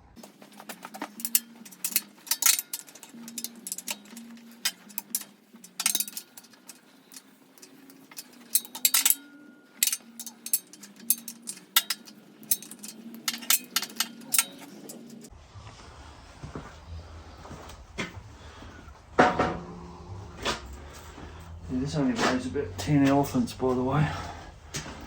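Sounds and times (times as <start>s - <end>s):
metal tools clinking: 0.2s - 15.3s.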